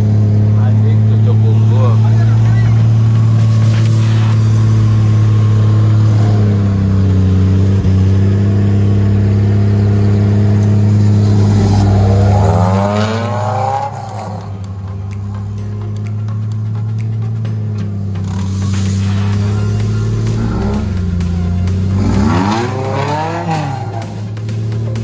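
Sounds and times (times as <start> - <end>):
vehicle engine revving: 0.0 - 25.0.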